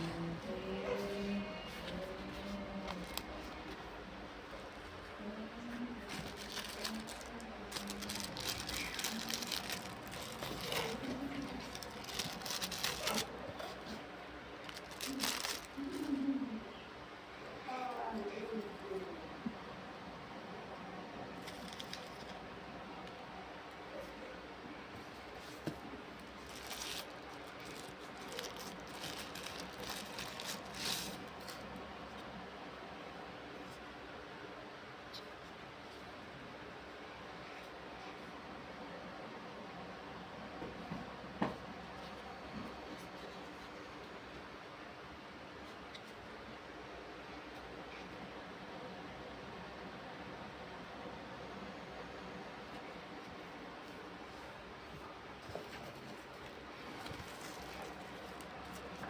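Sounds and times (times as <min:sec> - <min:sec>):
faint voices: 0:00.0 - 0:31.9
packaging rustling and crinkling: 0:01.8 - 0:03.9, 0:06.0 - 0:16.2, 0:21.4 - 0:22.4, 0:25.3 - 0:31.8, 0:54.9 - 0:59.0.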